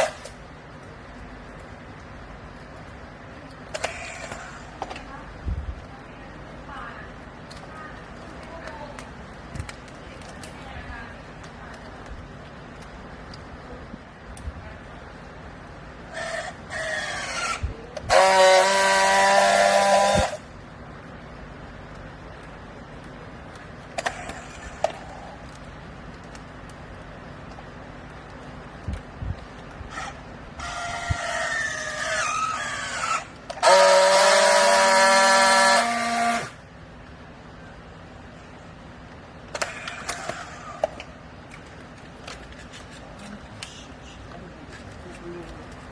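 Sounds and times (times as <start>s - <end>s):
hydraulic power unit whining: 15.9s - 20.5s, 28.8s - 36.7s
horn sounding steady tone: 18.0s - 20.5s, 32.2s - 36.6s.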